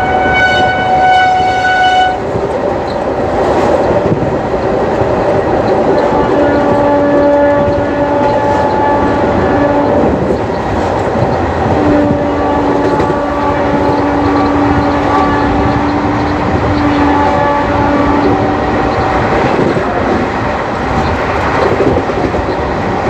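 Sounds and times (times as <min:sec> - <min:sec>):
locomotive horn blasts: 0:00.0 - 0:02.3, 0:05.9 - 0:10.4, 0:11.7 - 0:19.8
train coaches rumbling on track: 0:00.0 - 0:23.0.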